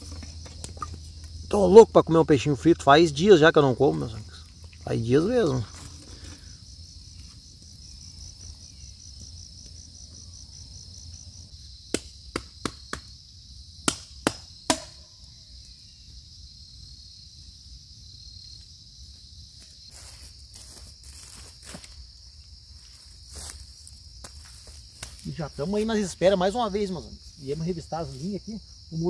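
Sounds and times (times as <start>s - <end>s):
crickets chirring: 0.0s - 29.0s
sharp knocks: 13.8s - 15.0s.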